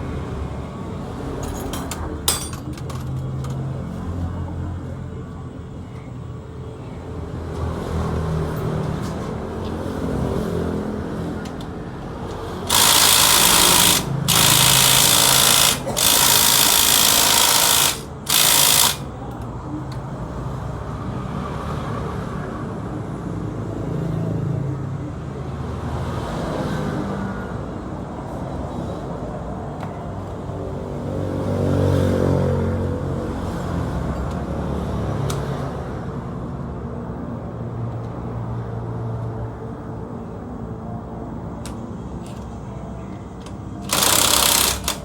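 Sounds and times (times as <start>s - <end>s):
loud harsh rattle: 12.7s - 19.1s, 43.9s - 45.0s.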